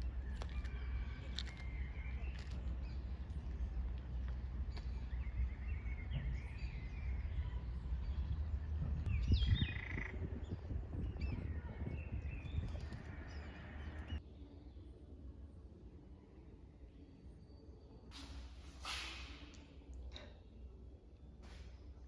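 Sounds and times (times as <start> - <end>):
birds chirping and calling: 0.0 - 14.2.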